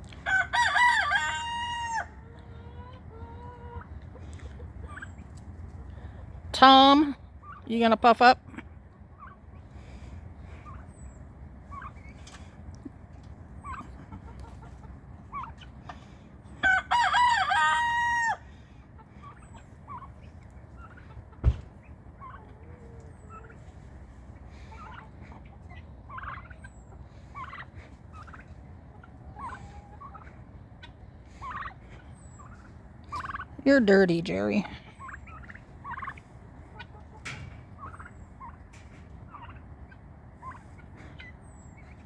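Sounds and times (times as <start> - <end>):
poultry clucking and chirping: 0.0 - 42.0
rooster crowing: 0.2 - 2.2, 16.6 - 18.4.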